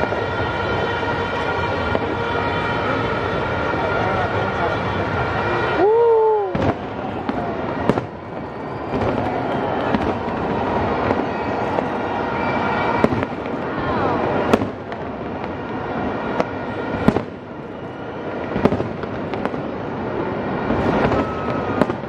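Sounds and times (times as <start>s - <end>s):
crowd noise: 0.0s - 22.0s
fireworks bangs: 0.0s - 22.0s.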